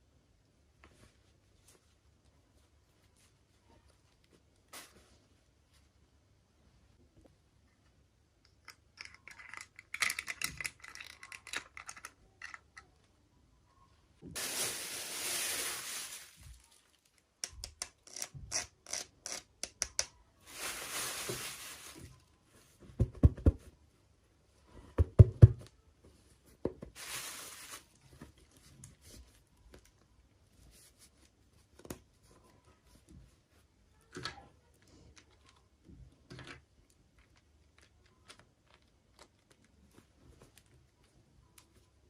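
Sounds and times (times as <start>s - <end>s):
packaging rustling and tearing: 14.4s - 17.1s, 20.5s - 22.2s, 27.0s - 28.0s.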